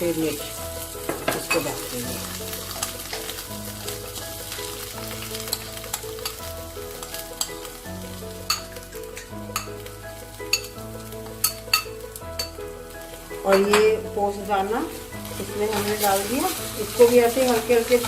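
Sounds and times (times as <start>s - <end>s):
spices sizzling in a pan: 0.0s - 18.0s
spoon scraping a pan: 1.0s - 7.7s, 13.4s - 18.0s.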